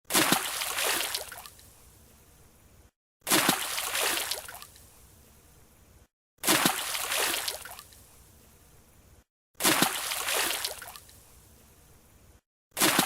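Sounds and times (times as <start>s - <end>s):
diver splashing into pool: 3.3s - 4.6s, 6.4s - 7.7s, 9.6s - 10.9s, 12.8s - 13.0s.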